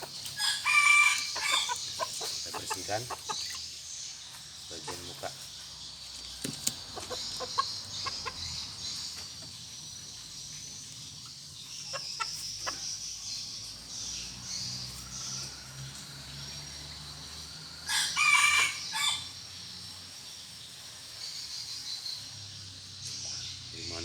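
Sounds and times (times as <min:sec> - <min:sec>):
rooster crowing: 0:00.4 - 0:01.9, 0:17.7 - 0:19.4.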